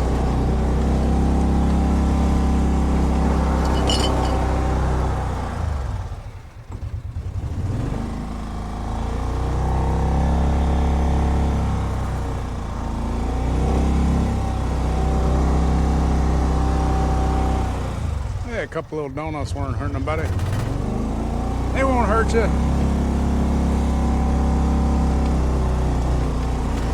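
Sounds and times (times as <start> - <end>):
utility vehicle engine revving: 0.0 - 18.4, 19.5 - 26.9.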